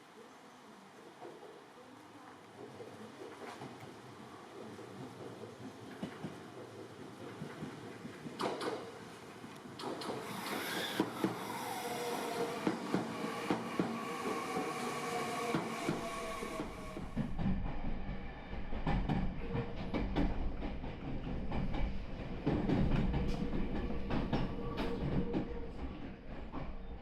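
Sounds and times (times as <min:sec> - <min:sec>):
wheels clicking over rail joints: 0:04.9 - 0:17.8, 0:18.7 - 0:27.0.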